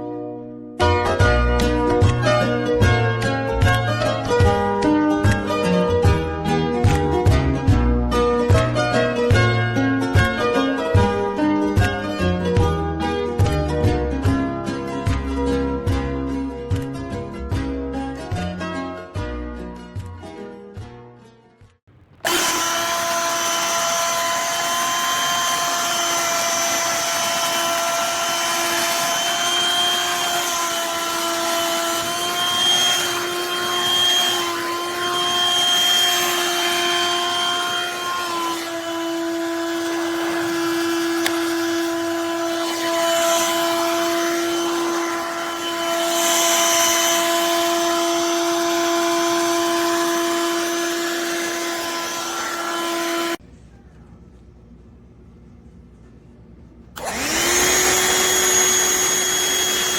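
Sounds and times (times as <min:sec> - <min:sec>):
handheld vacuum whining: 0:22.0 - 0:53.4, 0:57.0 - 0:59.9.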